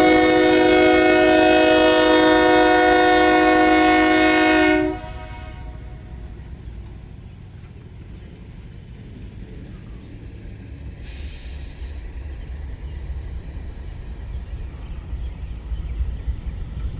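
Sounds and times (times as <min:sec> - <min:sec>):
train horn echo: 0:00.0 - 0:06.2
train rumble: 0:00.0 - 0:16.9
brief hiss: 0:11.0 - 0:12.6.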